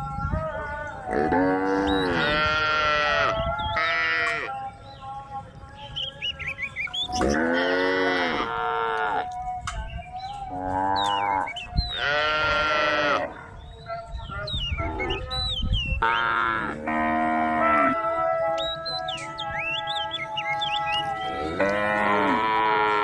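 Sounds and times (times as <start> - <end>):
cows mooing: 1.1 - 4.5, 7.1 - 9.5, 10.5 - 13.5, 16.0 - 18.6, 19.8 - 23.0.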